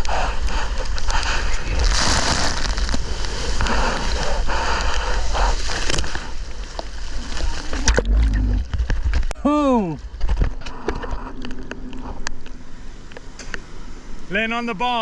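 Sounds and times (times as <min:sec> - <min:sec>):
water splashing and sloshing: 0:05.4 - 0:09.3.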